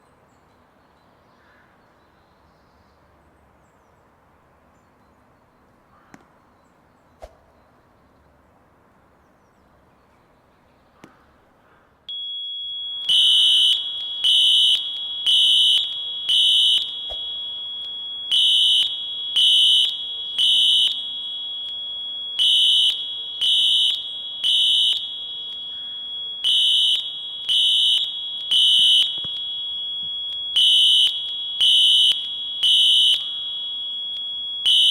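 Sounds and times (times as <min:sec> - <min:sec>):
fire alarm horn blasting: 0:12.1 - 0:34.9
high-pitched alarm tone: 0:12.1 - 0:34.9.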